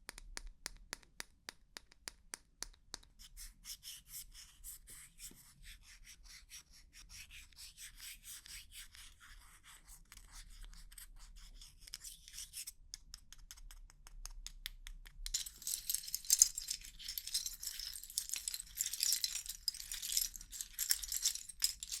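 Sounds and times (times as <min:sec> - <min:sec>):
plastic keycaps clattering: 0:15.3 - 0:22.0.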